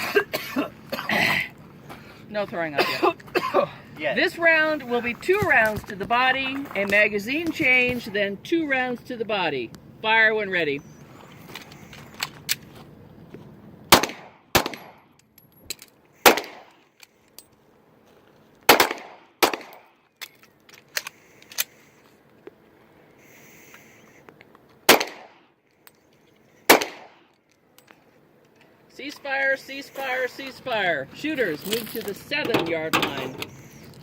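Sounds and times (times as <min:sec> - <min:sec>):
pistol shots with echo: 0:13.9 - 0:15.0, 0:16.2 - 0:16.7, 0:18.7 - 0:19.9, 0:24.9 - 0:25.4, 0:26.7 - 0:27.2.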